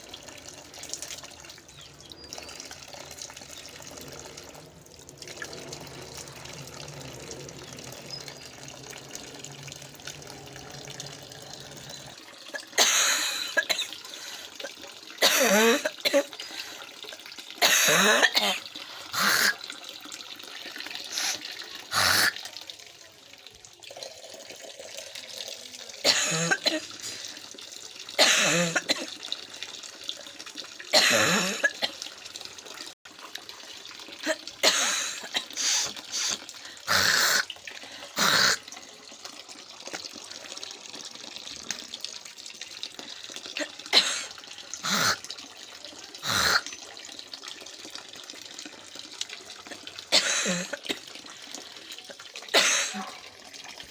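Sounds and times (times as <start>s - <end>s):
person coughing: 12.6s - 14.0s, 15.2s - 16.3s, 17.6s - 18.6s, 26.0s - 27.0s, 28.2s - 29.1s, 30.9s - 32.0s, 34.2s - 35.9s, 50.1s - 51.0s, 52.5s - 53.2s.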